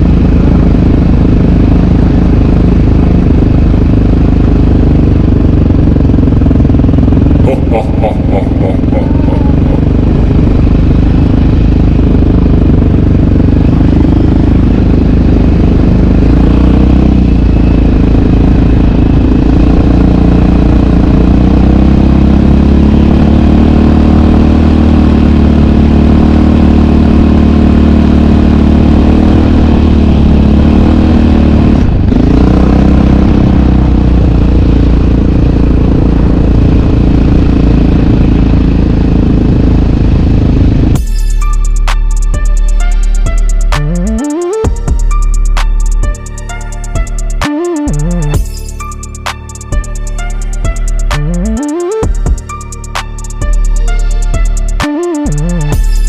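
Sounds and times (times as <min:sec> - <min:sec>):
atv engine revving: 0:00.0 - 0:41.0.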